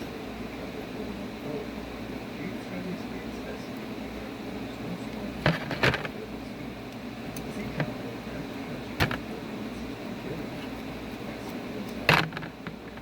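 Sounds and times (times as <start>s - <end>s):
steady background hum: 0.0s - 13.0s
clicks and knocks of tools: 11.9s - 13.0s.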